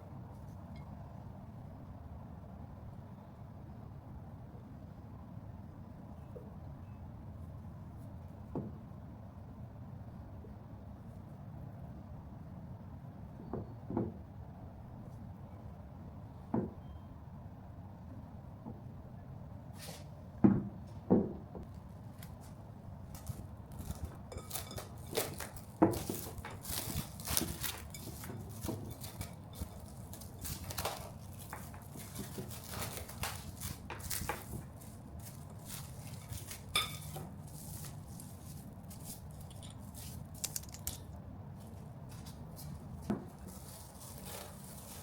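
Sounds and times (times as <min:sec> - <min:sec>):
utensils clicking and clattering: 0:23.7 - 0:38.0, 0:39.0 - 0:41.2.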